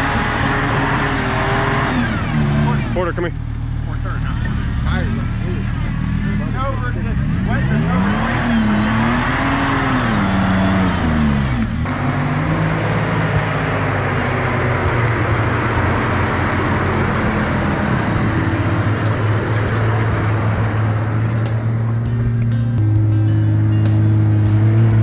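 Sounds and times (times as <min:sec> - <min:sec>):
off-road engine revving: 0:00.0 - 0:25.0
tyre noise: 0:11.9 - 0:25.0.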